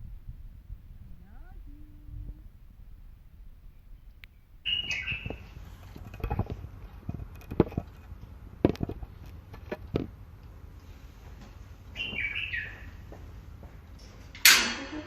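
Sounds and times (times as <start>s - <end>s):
parrot whistling call: 4.6s - 5.4s
sharp clicks and knocks: 5.2s - 10.1s.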